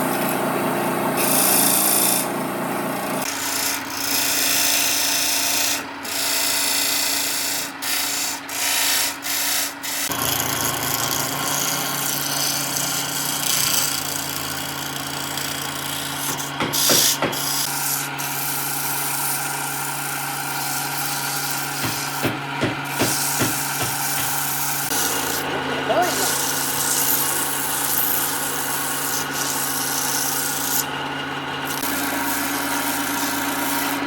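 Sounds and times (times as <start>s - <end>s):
power tool sanding wood: 0.0s - 34.0s
sharp knocks: 16.2s - 17.6s, 21.8s - 24.6s.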